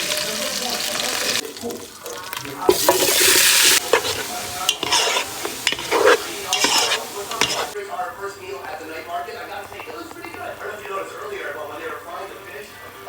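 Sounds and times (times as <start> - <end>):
food sizzling in a pan: 0.0 - 7.8
utensil scraping and clinking pan: 2.7 - 7.8, 9.2 - 10.8.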